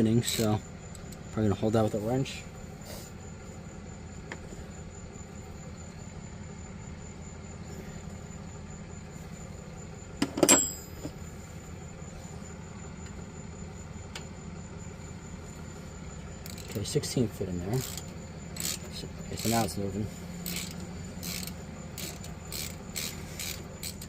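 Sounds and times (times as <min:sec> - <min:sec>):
low hum with high whine: 0:00.0 - 0:24.0
metallic clank: 0:10.2 - 0:11.1.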